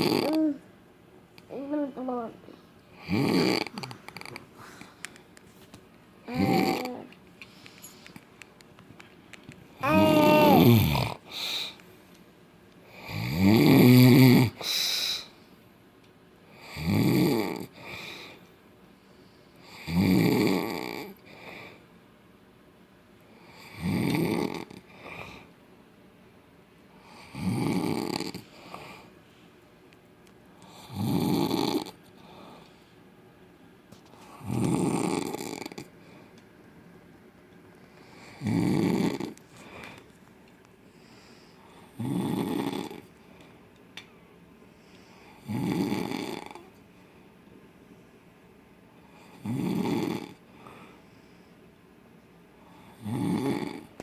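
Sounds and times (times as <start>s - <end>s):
quiet breathing: 2.4s - 5.3s, 7.4s - 8.4s, 10.9s - 12.1s, 17.6s - 19.9s, 21.0s - 22.0s, 24.8s - 25.6s, 28.3s - 29.8s, 31.8s - 33.2s, 34.0s - 36.4s, 37.7s - 43.7s, 44.6s - 45.6s, 50.3s - 51.8s
man snoring loudly: 3.0s - 3.8s, 9.8s - 11.2s, 13.0s - 14.5s, 19.8s - 21.1s, 27.3s - 28.4s, 30.8s - 31.9s, 34.5s - 35.8s, 38.4s - 39.3s, 42.0s - 43.0s, 45.4s - 46.6s, 49.4s - 50.4s, 53.0s - 53.9s.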